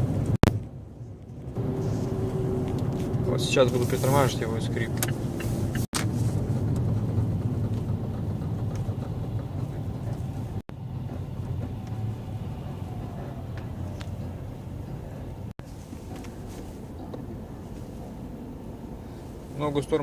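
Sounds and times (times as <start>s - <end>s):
low rumble of rolling car: 0.0s - 20.0s.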